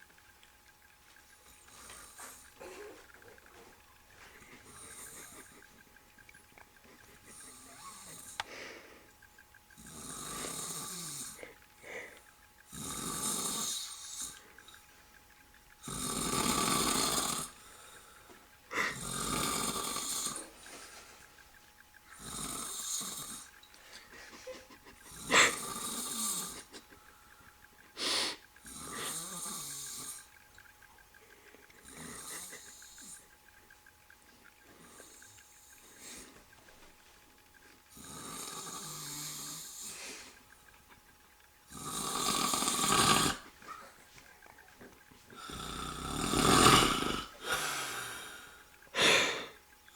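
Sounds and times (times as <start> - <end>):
man snoring: 9.8 - 11.4, 12.7 - 14.4, 15.8 - 17.6, 18.7 - 20.5, 22.2 - 23.5, 25.1 - 26.6, 28.0 - 30.2, 38.0 - 40.0, 41.7 - 43.4, 45.4 - 49.6.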